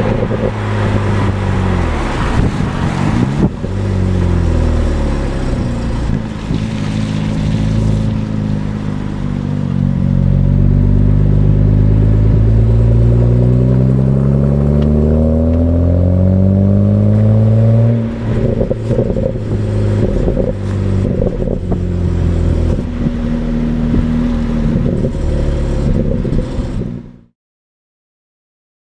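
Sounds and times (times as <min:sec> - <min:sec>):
exhaust pops and crackles: 0:00.0 - 0:09.7, 0:18.0 - 0:27.1
car engine revving: 0:00.0 - 0:27.3.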